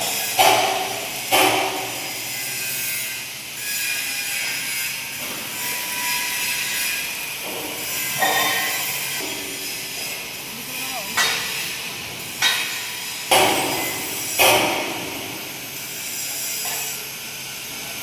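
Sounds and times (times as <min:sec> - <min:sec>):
welding arc crackling hiss: 0:00.0 - 0:18.0
sharp metallic knocks: 0:00.4 - 0:02.0, 0:11.2 - 0:11.8, 0:12.4 - 0:15.2.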